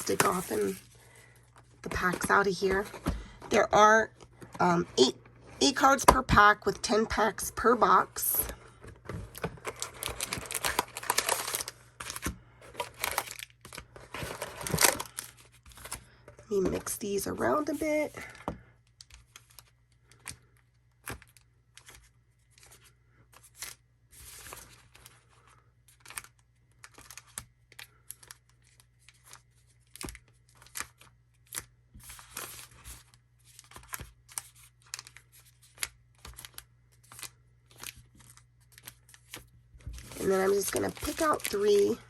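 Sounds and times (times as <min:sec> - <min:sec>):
foil packs crinkling and rustling: 0:00.0 - 0:03.4, 0:08.8 - 0:16.1, 0:23.4 - 0:42.0.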